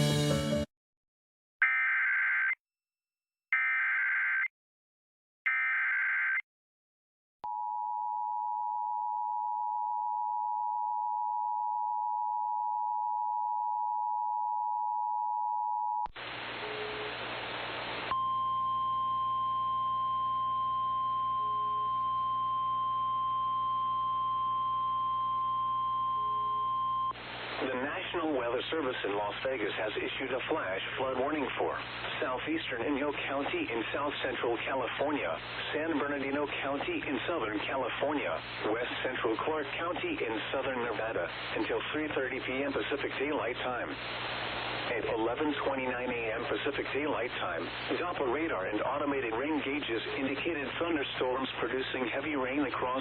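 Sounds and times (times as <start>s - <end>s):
radio hiss: 16.2s - 18.1s, 27.2s - 53.0s.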